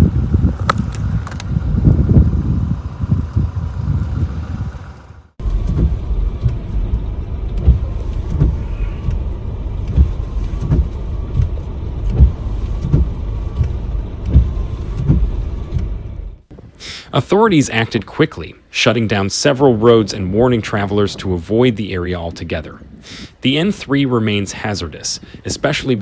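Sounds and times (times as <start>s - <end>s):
heavy low thumps: 0.0s - 16.8s
motor vehicle rumble: 0.0s - 26.0s.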